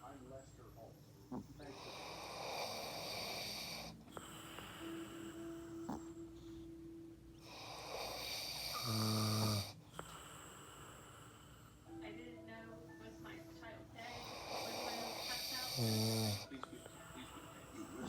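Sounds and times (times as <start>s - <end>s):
person snoring: 1.3s - 6.2s, 7.5s - 11.6s, 14.2s - 18.0s.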